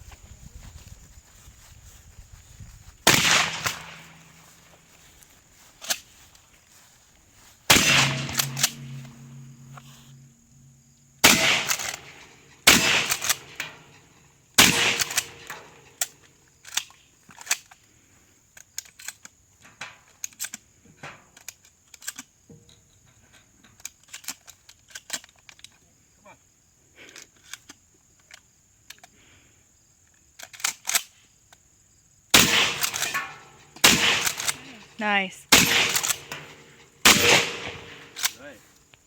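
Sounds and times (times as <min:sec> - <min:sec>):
shotgun shots: 0:03.0 - 0:04.7, 0:07.7 - 0:10.4, 0:11.2 - 0:13.9, 0:14.6 - 0:15.7, 0:32.4 - 0:38.3
low ringing: 0:07.7 - 0:12.4.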